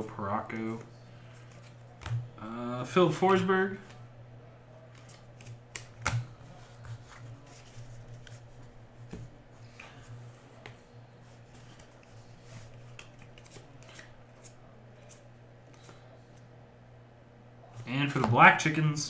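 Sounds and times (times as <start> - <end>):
steady low hum: 0.0 - 19.0
trading cards flipped: 4.9 - 8.4, 11.6 - 16.0.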